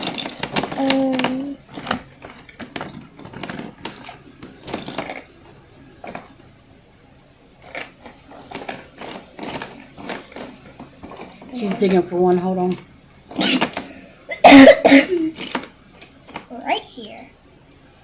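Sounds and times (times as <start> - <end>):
packaging crinkling: 0.0 - 5.3, 7.6 - 12.0
plastic toys clicking and clacking: 0.0 - 5.3, 7.6 - 13.9, 15.4 - 17.3.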